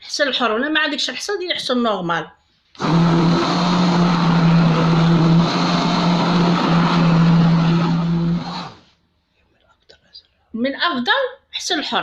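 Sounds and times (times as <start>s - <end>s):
blender motor hum: 2.8s - 8.9s.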